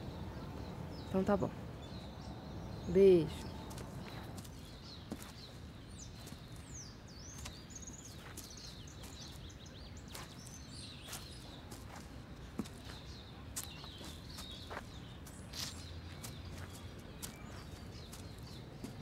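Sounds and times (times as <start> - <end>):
low steady background noise: 0.0 - 19.0
small birds chirping: 0.0 - 19.0.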